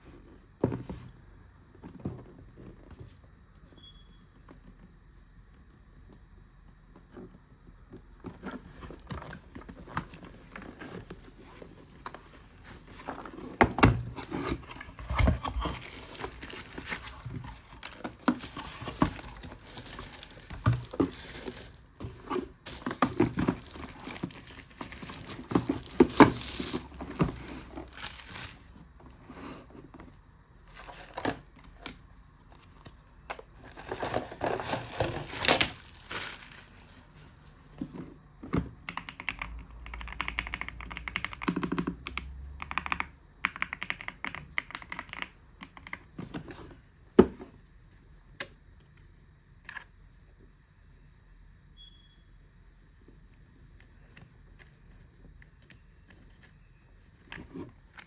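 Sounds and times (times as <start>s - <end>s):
wrapping crinkling and tearing: 15.6s - 21.9s, 22.6s - 28.6s, 33.6s - 37.1s.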